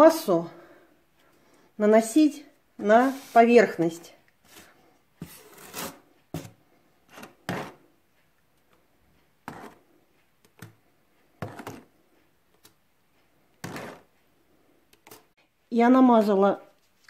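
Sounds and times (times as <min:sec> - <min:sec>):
putty scraping on panel: 0:02.8 - 0:03.8, 0:04.4 - 0:07.8, 0:09.4 - 0:09.8, 0:11.4 - 0:11.9, 0:13.6 - 0:14.1.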